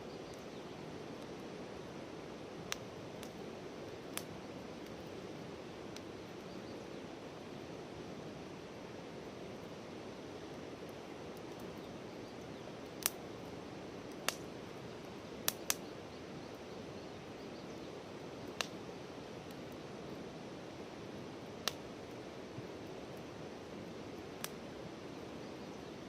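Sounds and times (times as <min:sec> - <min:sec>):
campfire crackling: 0:00.0 - 0:26.0
soft hiss of fire: 0:00.0 - 0:26.0
burning firewood popping: 0:02.6 - 0:06.2, 0:10.8 - 0:11.8, 0:12.7 - 0:16.6, 0:18.0 - 0:19.9, 0:21.3 - 0:25.9.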